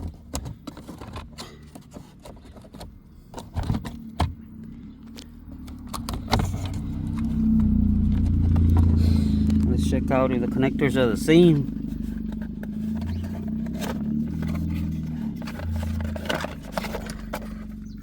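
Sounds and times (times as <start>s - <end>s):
vehicle engine rumbling: 0.0s - 18.0s.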